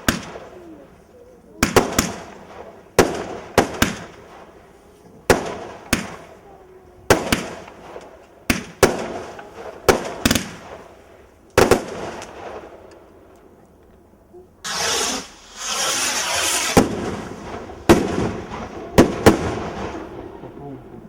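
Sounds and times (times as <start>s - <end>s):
fireworks bangs: 0.0s - 13.6s, 14.6s - 21.0s
firework rushing hiss: 14.6s - 21.0s.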